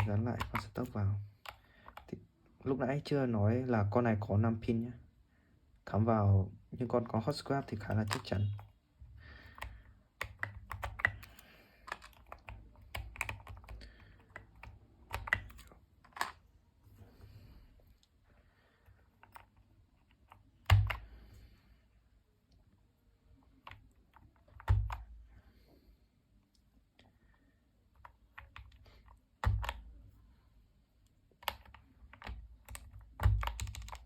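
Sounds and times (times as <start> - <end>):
plastic clicks and snaps: 15.2 - 16.4.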